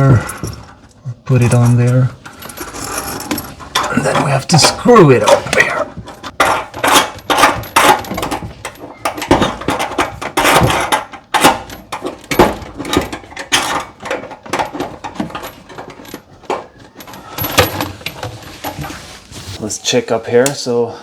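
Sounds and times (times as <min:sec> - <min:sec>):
metal clinking and rattling: 0:00.0 - 0:19.5.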